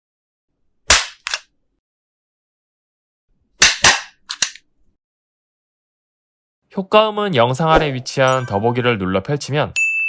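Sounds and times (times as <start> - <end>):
stapler snapping: 3.6 - 4.6
stapler clicks: 3.8 - 4.6.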